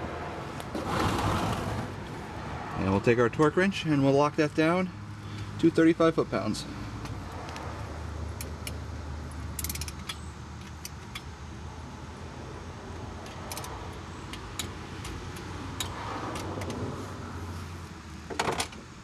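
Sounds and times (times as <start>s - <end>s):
metallic clicks and taps: 9.6s - 11.3s, 13.2s - 16.8s
torque wrench ratchet clicks: 9.6s - 11.3s.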